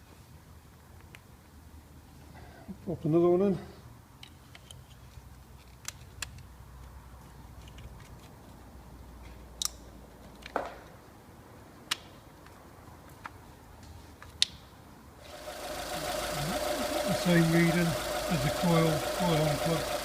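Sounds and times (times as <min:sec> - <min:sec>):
faint low hum: 0:15.2 - 0:20.0.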